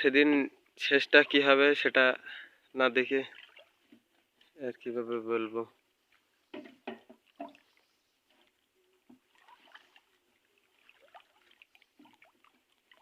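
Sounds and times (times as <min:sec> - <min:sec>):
faint water splashes and trickles: 0:00.0 - 0:13.0
light knocks: 0:06.5 - 0:07.6.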